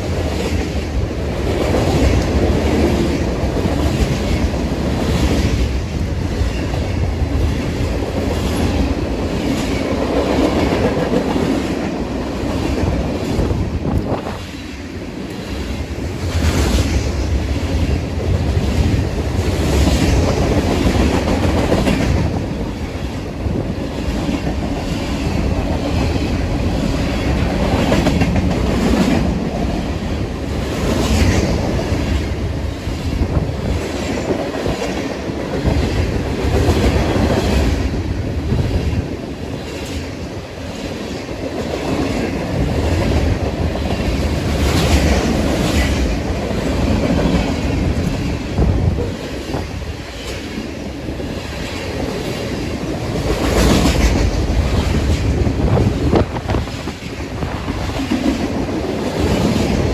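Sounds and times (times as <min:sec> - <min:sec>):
train wheels rumbling on rails: 0:00.0 - 0:59.9.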